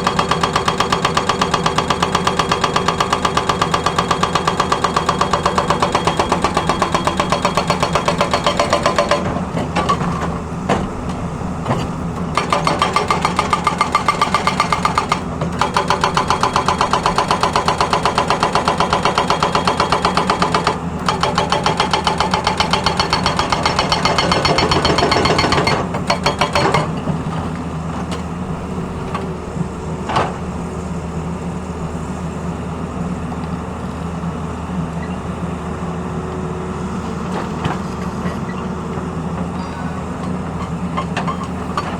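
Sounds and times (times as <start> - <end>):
hydraulic breaker hammering: 0.0 - 29.3
excavator diesel engine running: 0.0 - 41.9.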